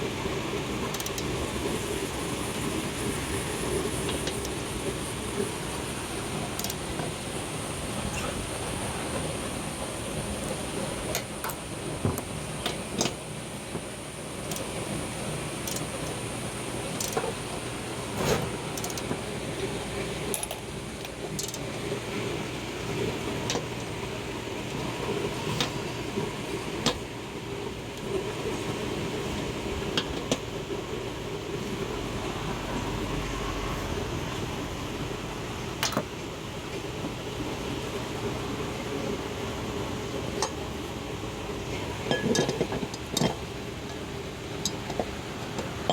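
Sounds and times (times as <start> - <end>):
steady background hum: 0.0 - 45.9
hand tools clinking on metal: 18.2 - 19.2, 20.3 - 20.7, 42.1 - 43.4.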